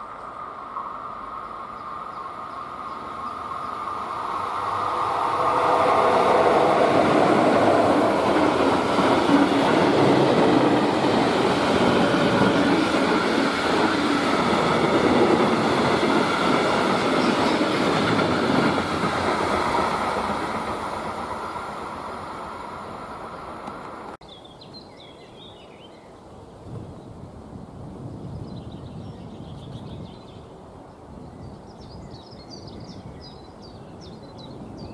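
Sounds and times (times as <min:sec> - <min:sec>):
freight train wheels rumbling: 0:01.8 - 0:24.2.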